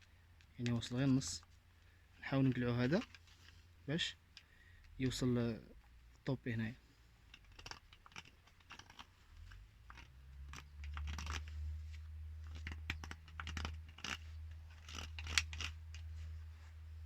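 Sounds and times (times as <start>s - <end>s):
hand tools cutting plastic pipe: 7.3s - 16.2s.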